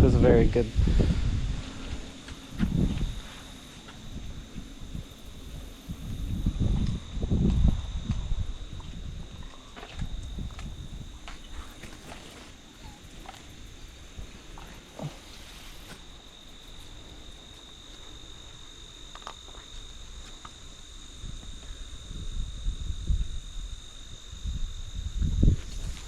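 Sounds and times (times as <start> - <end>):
insects trilling: 0.0 - 26.0.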